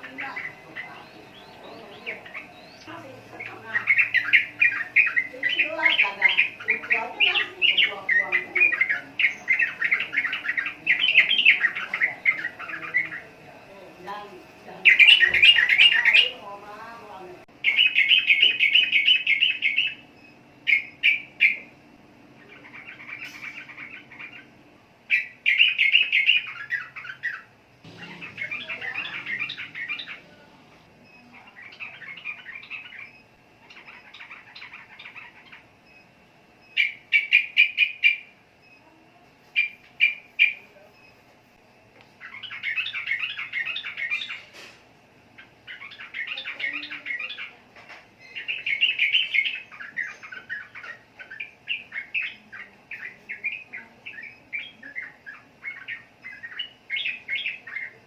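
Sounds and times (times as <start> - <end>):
bulbul chattering song: 0.0 - 58.0.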